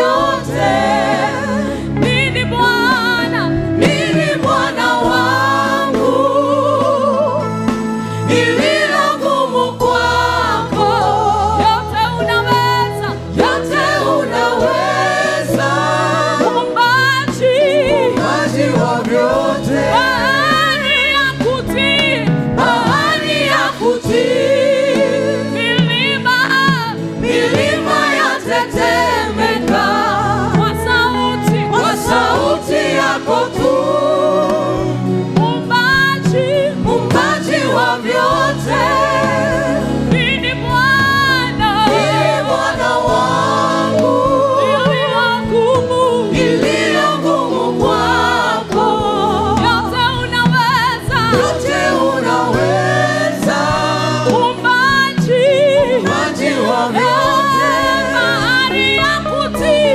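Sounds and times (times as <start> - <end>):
group of voices singing: 0.0 - 59.9
instrumental backing: 0.0 - 59.9.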